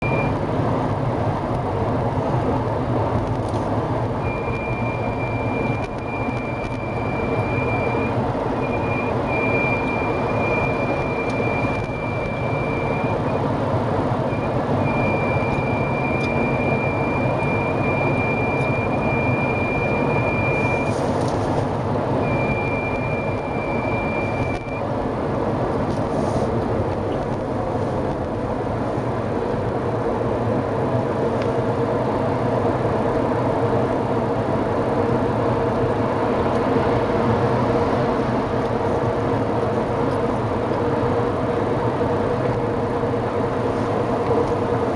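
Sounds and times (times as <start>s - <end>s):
road and engine noise: 0.0s - 44.9s
high squeaking whistle: 4.3s - 13.3s, 14.4s - 20.9s, 22.2s - 24.8s.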